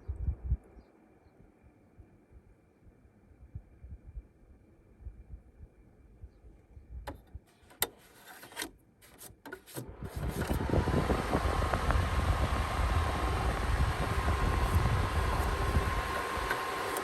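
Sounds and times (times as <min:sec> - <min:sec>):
faint steady whine: 0:09.8 - 0:17.0
machine rushing and rumbling: 0:09.9 - 0:17.0.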